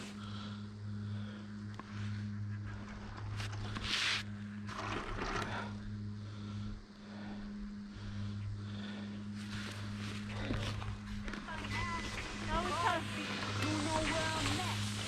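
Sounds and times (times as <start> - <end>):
low steady hum: 0.0 - 15.0
skis scraping on snow: 3.0 - 5.2, 9.4 - 15.0.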